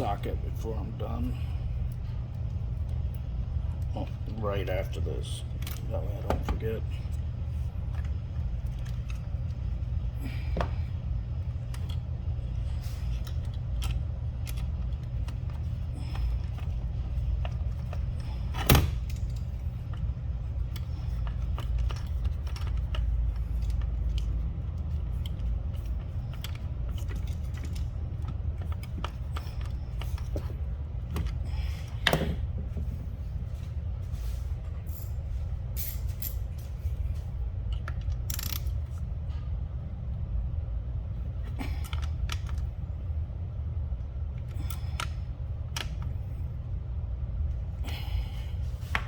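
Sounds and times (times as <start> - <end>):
steady low hum: 0.0 - 49.0
metal tools clinking: 34.7 - 36.8.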